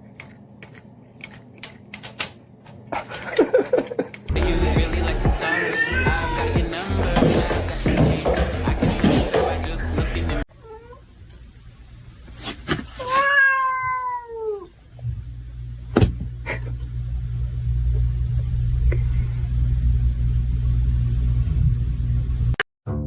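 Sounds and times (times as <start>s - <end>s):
cat meowing: 5.6s - 6.6s, 10.6s - 11.0s, 13.0s - 14.8s
steady low hum: 14.7s - 22.6s.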